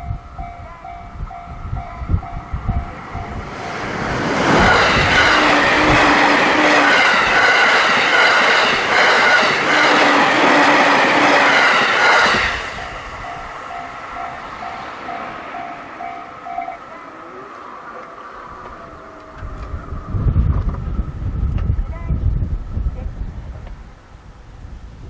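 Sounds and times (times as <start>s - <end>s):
crossing warning bell dinging: 0.0s - 20.0s
train passing: 0.0s - 24.7s.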